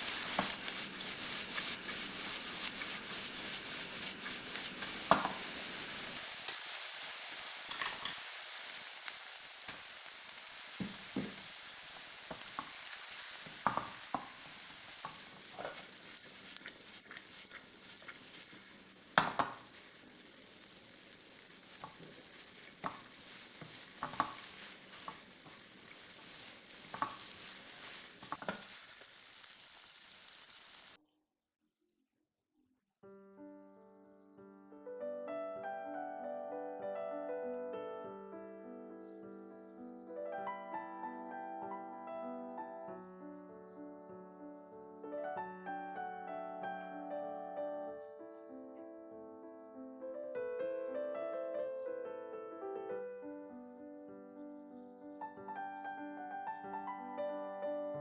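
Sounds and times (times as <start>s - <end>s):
noodles sizzling in a pan: 0.0s - 31.0s
utensil scraping a pan: 0.0s - 31.0s.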